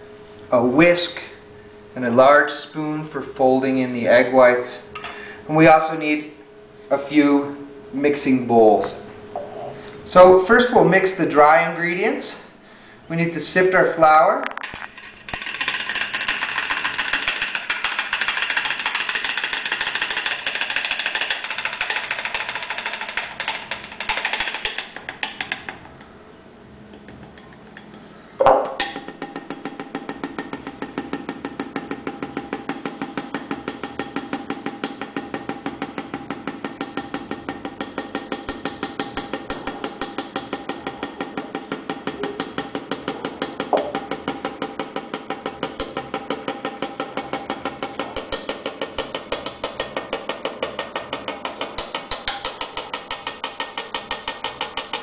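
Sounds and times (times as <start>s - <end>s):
knock: 28.4s - 28.8s, 43.7s - 44.0s.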